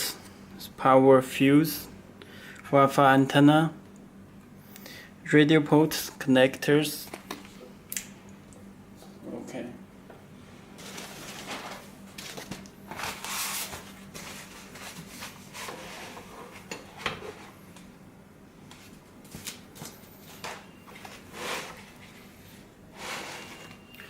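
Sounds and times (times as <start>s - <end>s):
rustles and scrapes of handling: 10.8s - 17.6s, 18.7s - 23.9s.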